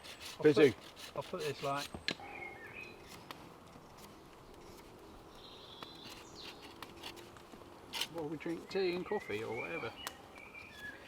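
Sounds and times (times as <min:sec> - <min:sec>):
faint high bird calls: 0:02.0 - 0:03.3, 0:09.0 - 0:11.0.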